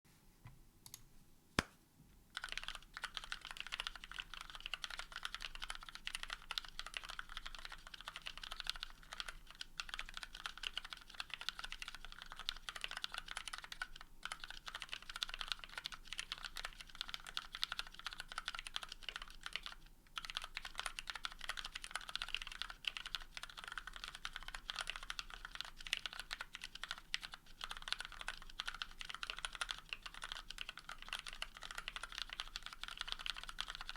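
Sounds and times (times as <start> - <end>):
typing on mechanical keyboard: 2.4 - 33.9.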